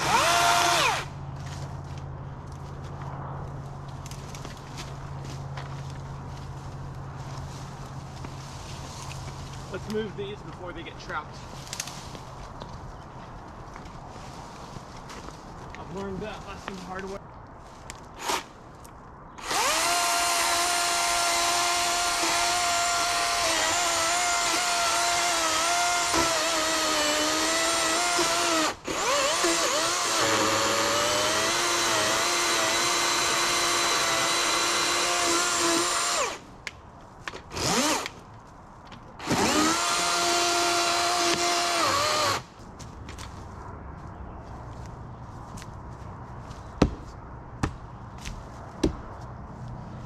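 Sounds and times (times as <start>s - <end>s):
chainsaw cutting wood: 0.0s - 1.1s, 19.4s - 36.4s, 37.5s - 38.2s, 39.2s - 42.5s.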